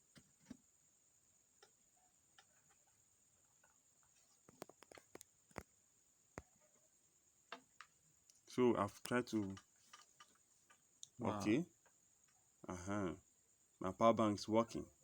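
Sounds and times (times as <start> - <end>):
faint high-pitched whine: 0.0 - 15.0
faint clicks and taps: 1.6 - 6.8, 7.5 - 11.2.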